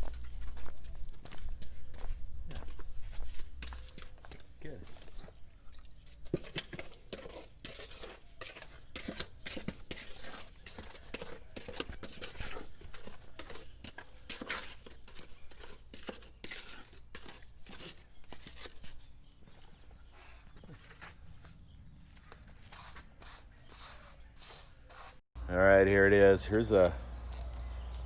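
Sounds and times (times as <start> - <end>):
scrapes crackles and light knocks: 2.5 - 23.2.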